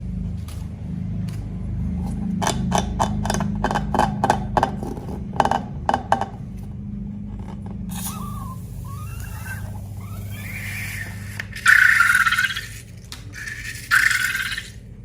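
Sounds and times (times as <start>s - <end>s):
steady low hum: 0.0s - 15.0s
squeaky rubber rubbing: 7.9s - 14.8s.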